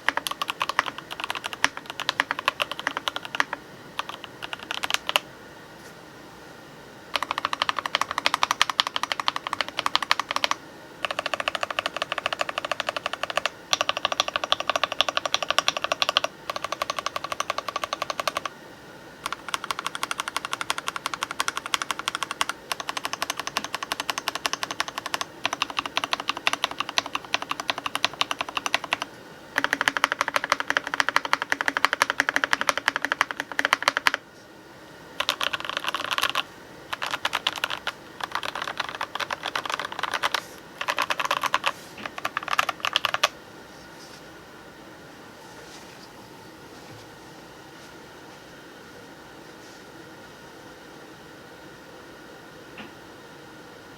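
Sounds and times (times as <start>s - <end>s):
mechanical keyboard typing: 0.0s - 5.3s, 7.1s - 18.6s, 19.2s - 34.2s, 35.2s - 43.4s.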